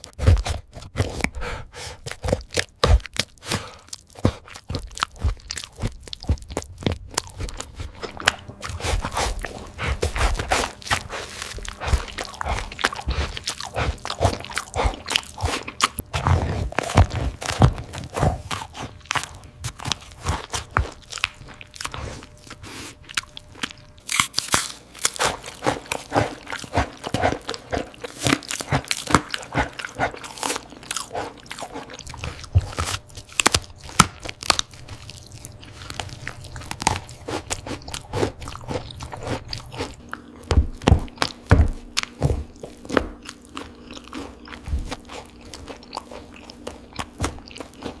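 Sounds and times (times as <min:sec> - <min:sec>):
dog chewing food crunches: 0:00.0 - 0:48.0.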